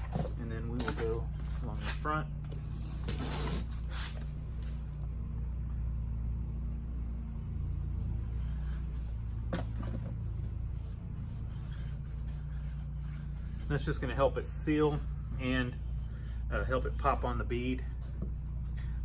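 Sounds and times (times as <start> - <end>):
low machine hum: 0.0 - 19.0
clicks and rubbing on tire: 8.3 - 18.9.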